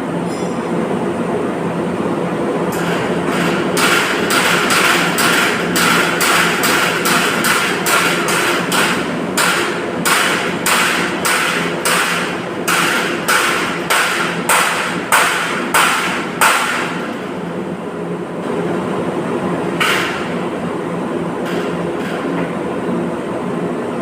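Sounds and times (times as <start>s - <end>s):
steady hum: 0.0s - 24.0s
hammer striking metal: 3.8s - 17.0s.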